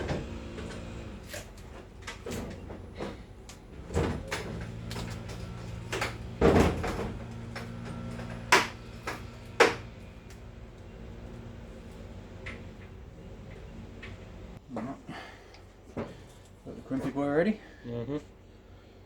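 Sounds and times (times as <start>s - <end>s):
metal knocks and clunks: 0.0s - 10.1s.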